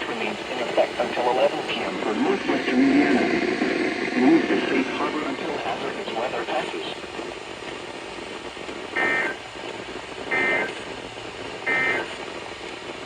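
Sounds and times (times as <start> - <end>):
radio static hiss: 0.0 - 13.0
shrill warbling digital tone bursts: 11.7 - 12.1.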